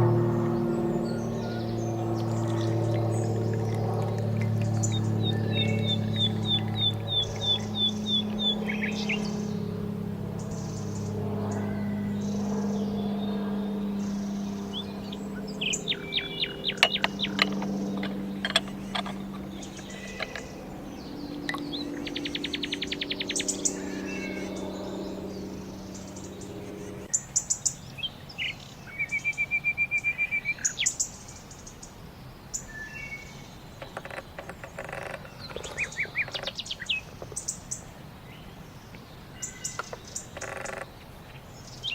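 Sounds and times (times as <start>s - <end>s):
low steady hum: 0.0s - 29.3s
songbirds chirping and trilling: 0.0s - 41.9s.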